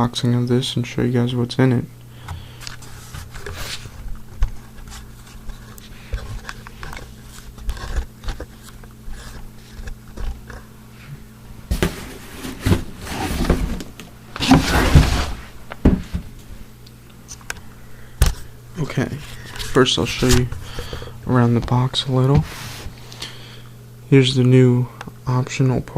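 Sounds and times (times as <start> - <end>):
steady low hum: 0.0 - 25.9
rustling scrapes: 2.7 - 15.6, 22.4 - 23.1.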